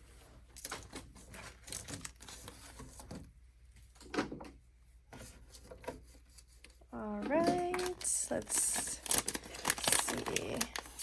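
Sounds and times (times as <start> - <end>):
plastic package crinkling: 0.6 - 2.9, 7.3 - 11.0.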